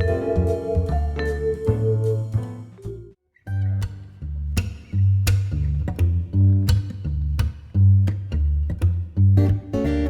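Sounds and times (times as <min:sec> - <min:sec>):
steady bass line: 0:00.0 - 0:10.0
plucked acoustic guitar: 0:03.5 - 0:10.0.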